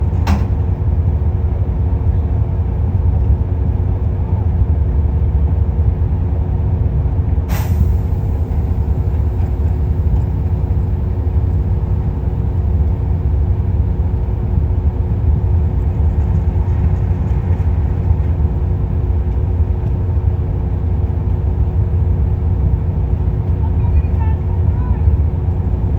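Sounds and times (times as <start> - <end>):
excavator diesel engine rumbling: 0.0 - 25.9
brief hiss: 7.5 - 8.3.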